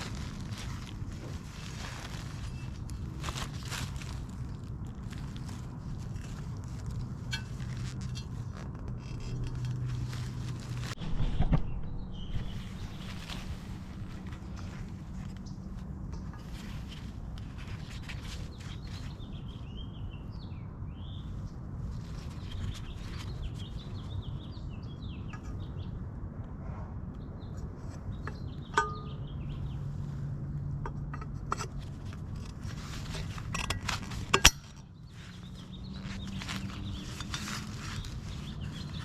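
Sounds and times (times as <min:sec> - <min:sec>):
birds chirping: 0:10.1 - 0:26.1, 0:27.1 - 0:30.6, 0:34.0 - 0:39.0
ringing metal clink: 0:28.7 - 0:29.2.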